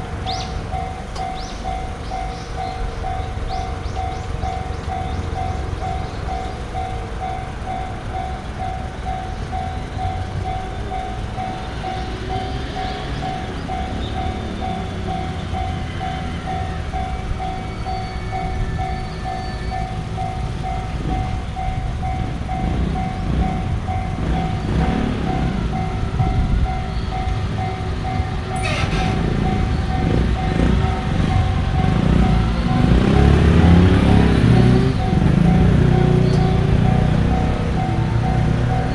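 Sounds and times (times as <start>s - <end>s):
train wheels rumbling on rail: 0.0s - 38.9s
level crossing bell ringing: 25.4s - 38.9s.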